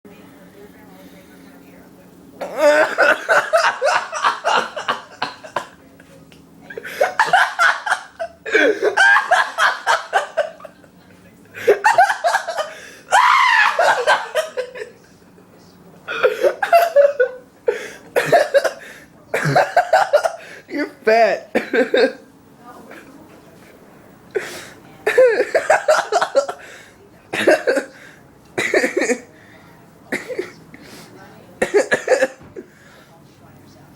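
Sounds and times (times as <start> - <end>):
person laughing hard: 2.4 - 5.8, 6.8 - 10.8, 11.6 - 14.9.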